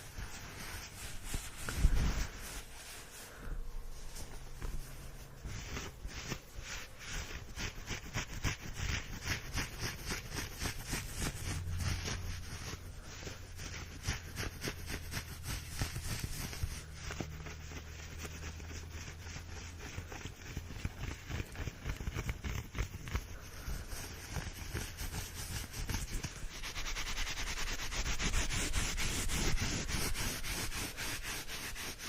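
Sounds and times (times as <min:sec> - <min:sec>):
scratching and tapping on surface: 0:13.8 - 0:27.4.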